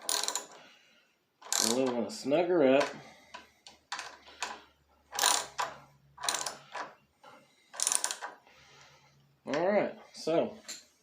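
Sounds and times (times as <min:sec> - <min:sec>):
socket ratchet clicking: 0:00.0 - 0:00.6, 0:01.4 - 0:01.9, 0:03.6 - 0:06.9, 0:07.7 - 0:08.4.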